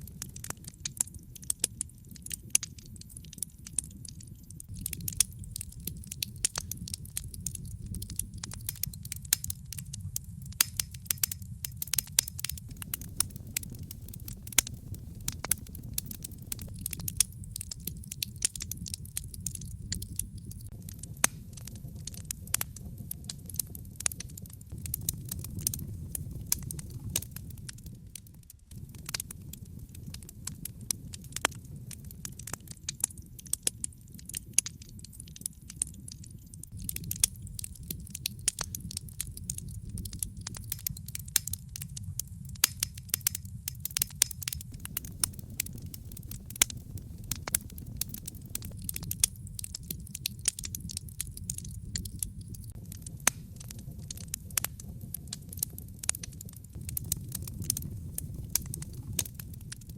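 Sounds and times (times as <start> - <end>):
fire crackling: 0.0 - 59.9
low rumble: 12.4 - 23.1, 24.7 - 30.4, 44.5 - 52.8, 56.8 - 59.9.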